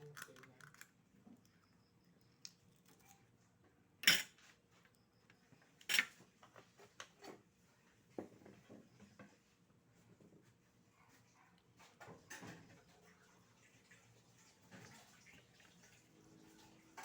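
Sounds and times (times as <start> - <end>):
oyster shells and tableware clacking: 4.0 - 4.4, 5.9 - 6.1.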